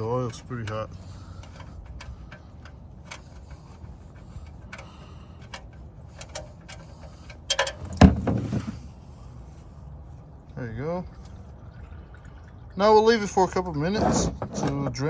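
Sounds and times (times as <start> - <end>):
plug clatter and thump: 7.5 - 8.8.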